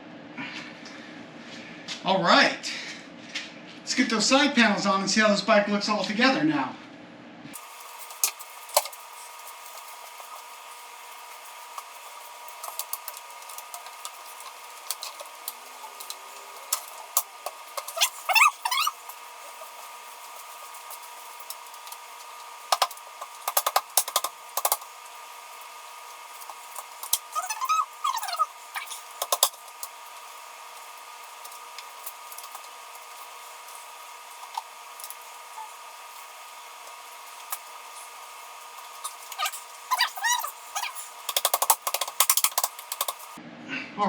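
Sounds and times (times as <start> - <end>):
steady hum: 0.0 - 43.8
short squeaky sound: 17.9 - 19.6.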